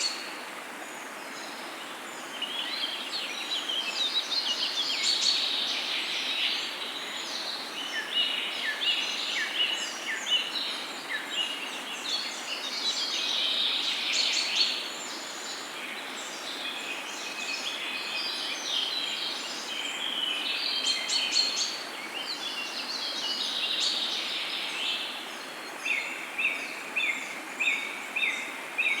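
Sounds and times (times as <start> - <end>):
outdoor background hiss: 0.0 - 29.0.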